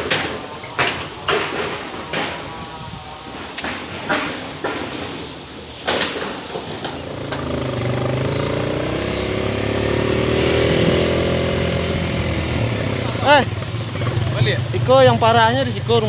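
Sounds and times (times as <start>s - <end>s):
small petrol engine running: 7.0s - 10.7s.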